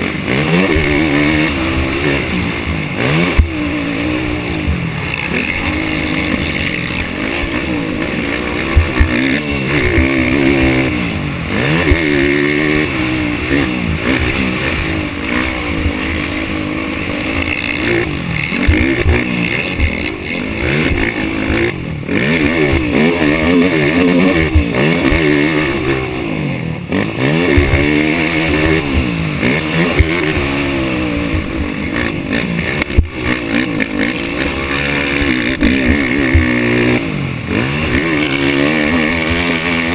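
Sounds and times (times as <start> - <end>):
atv engine revving: 0.0 - 39.9.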